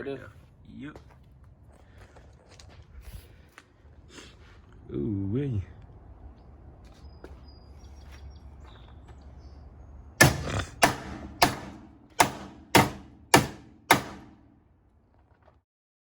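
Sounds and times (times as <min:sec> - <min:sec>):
hammer blows on car panel: 0:10.2 - 0:14.4.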